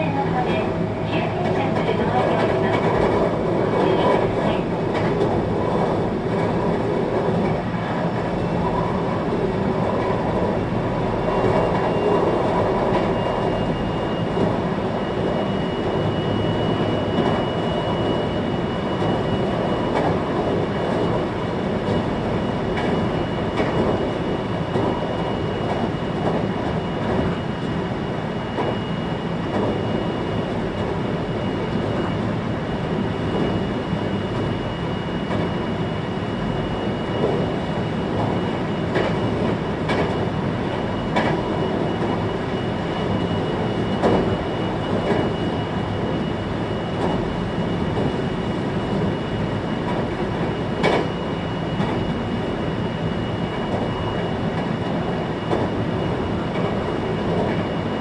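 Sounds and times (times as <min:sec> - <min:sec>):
train wheels rumbling on rails: 0:00.0 - 0:58.0
faint high whine: 0:07.8 - 0:39.5.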